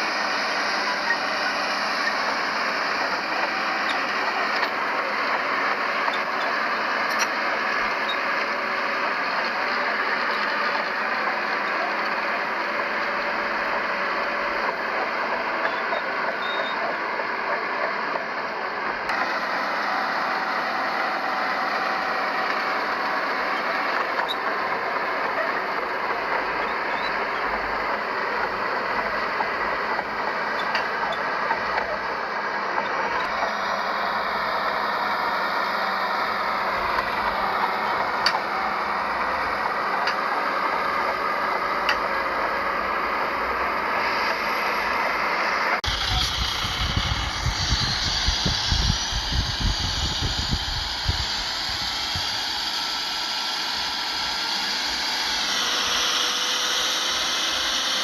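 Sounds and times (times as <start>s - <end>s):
heavy machinery engine noise: 0.0s - 58.0s
deep engine rumble: 23.8s - 52.6s.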